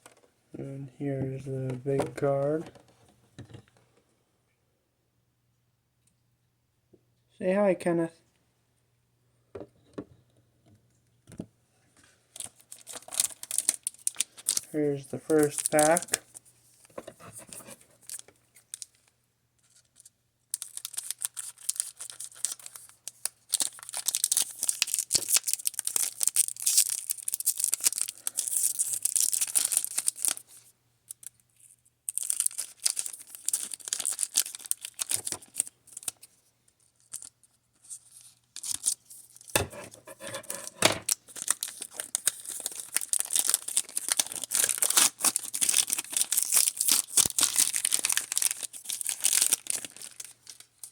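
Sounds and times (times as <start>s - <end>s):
foil wrapper tearing and crinkling: 12.4s - 16.4s, 19.7s - 30.5s, 31.1s - 36.3s, 36.9s - 39.6s, 40.4s - 50.9s.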